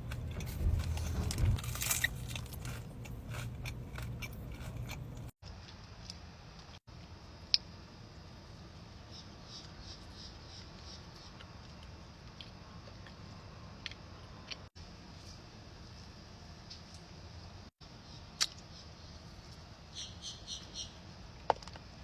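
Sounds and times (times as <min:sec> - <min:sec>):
crunching and chewing: 0:00.0 - 0:06.8
low steady hum: 0:00.0 - 0:08.8.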